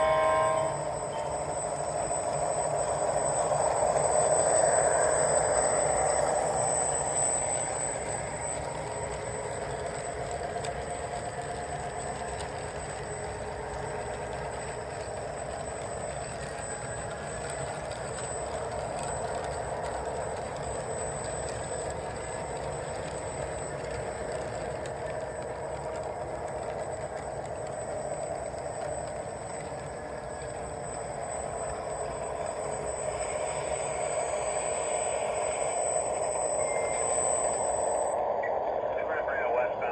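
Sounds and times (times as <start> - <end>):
model train motor hum: 0.0 - 38.2.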